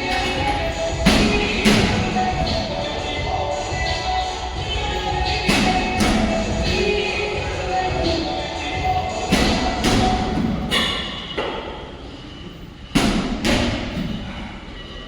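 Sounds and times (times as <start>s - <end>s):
background music: 0.0s - 15.0s
heavy thumps: 4.6s - 10.8s.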